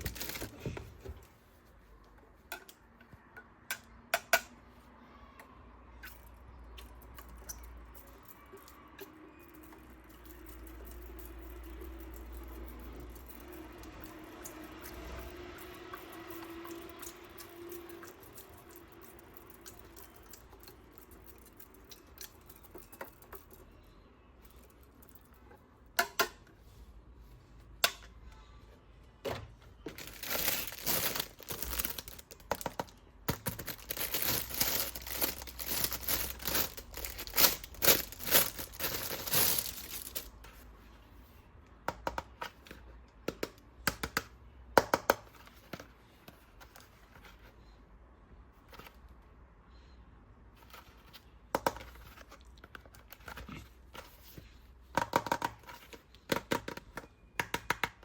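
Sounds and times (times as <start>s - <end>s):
packaging crinkling and tearing: 0.0s - 0.8s, 29.9s - 40.4s.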